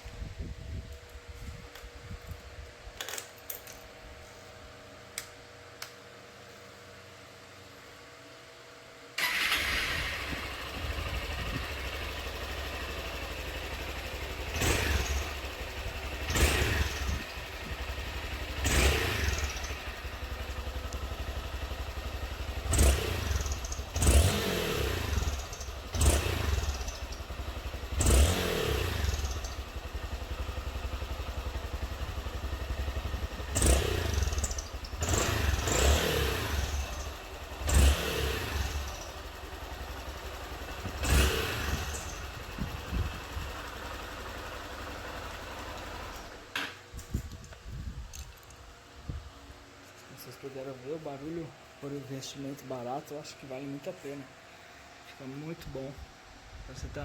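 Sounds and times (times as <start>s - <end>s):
motorcycle engine revving: 9.2s - 46.5s
motorcycle engine starting: 9.2s - 50.0s.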